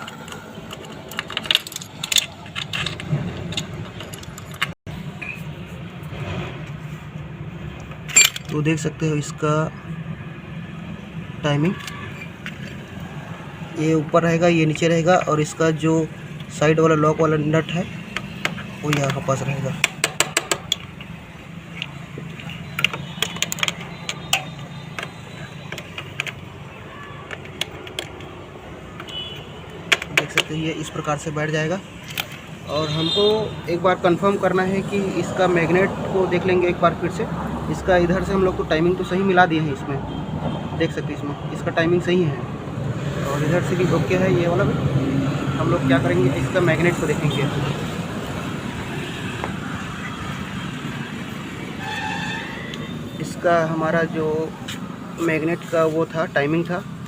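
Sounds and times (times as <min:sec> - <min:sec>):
metal chain clinking and rattling: 0:00.7 - 0:04.8, 0:08.1 - 0:08.6
sharp metallic clicks: 0:07.8 - 0:08.9, 0:17.9 - 0:31.2, 0:31.8 - 0:32.6.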